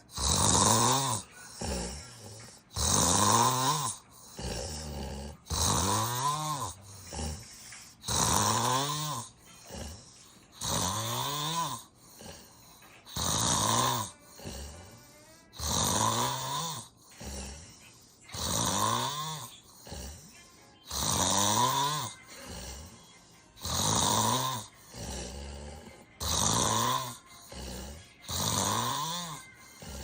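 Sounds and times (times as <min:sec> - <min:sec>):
person snoring loudly: 0:00.0 - 0:30.0
quiet breaths out: 0:06.7 - 0:08.1.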